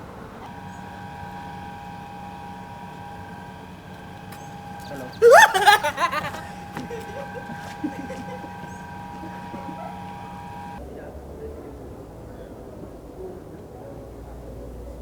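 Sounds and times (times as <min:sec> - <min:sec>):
steady hum: 0:00.3 - 0:10.8
person shouting: 0:05.0 - 0:06.5.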